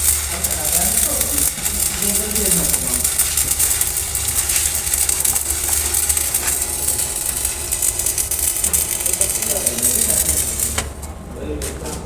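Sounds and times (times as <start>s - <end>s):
welding arc crackling and sizzling: 0.0s - 11.7s.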